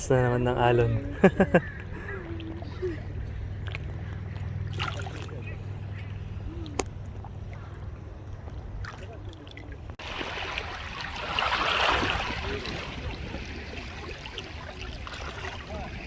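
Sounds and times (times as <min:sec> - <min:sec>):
steady low rumble: 0:00.0 - 0:11.3
waves washing against shore: 0:09.9 - 0:16.0.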